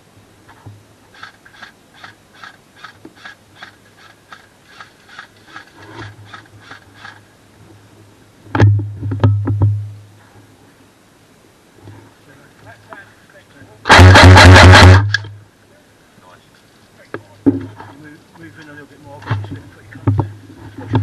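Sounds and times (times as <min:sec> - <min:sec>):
footsteps: 0:00.5 - 0:07.3.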